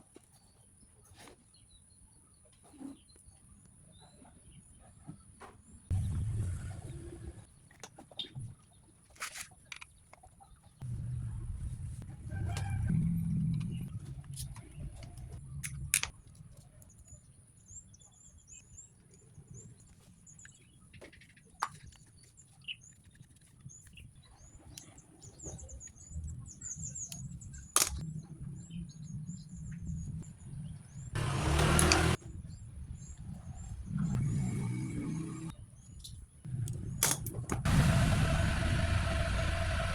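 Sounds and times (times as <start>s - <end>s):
noisy burst: 37.7s - 39.9s.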